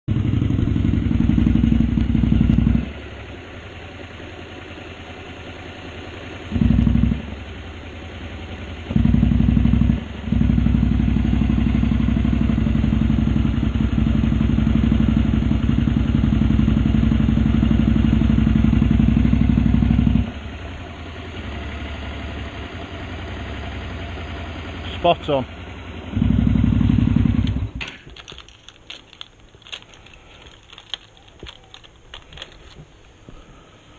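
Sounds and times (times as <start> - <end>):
motorcycle engine running: 0.0 - 33.5
engine mechanical ticking: 26.1 - 33.5.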